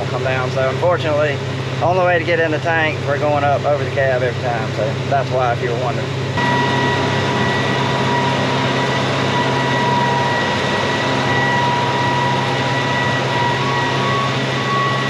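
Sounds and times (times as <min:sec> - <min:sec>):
diesel engine idling: 0:06.1 - 0:15.0
thin high whine: 0:06.3 - 0:15.0.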